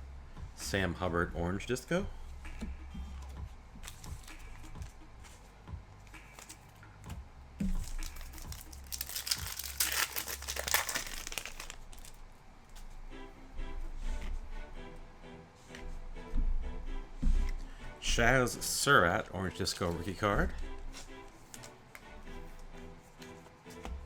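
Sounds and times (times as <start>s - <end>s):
faint music: 0.0s - 24.0s
cards ticking: 3.2s - 12.2s
foil wrapper crinkling and tearing: 7.7s - 12.2s.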